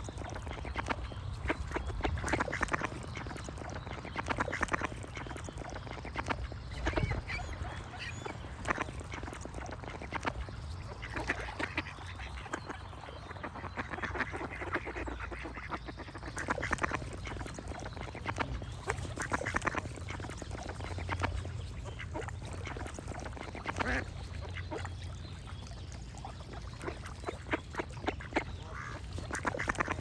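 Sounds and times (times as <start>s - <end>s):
ducks quacking: 0.1s - 25.1s, 26.4s - 30.0s.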